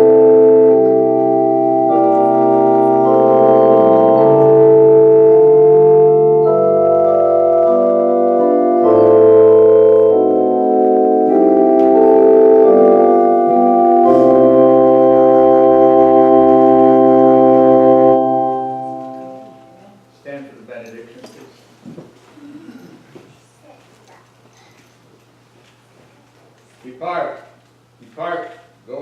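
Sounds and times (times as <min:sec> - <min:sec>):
organ playing sustained chords: 0:00.0 - 0:20.0.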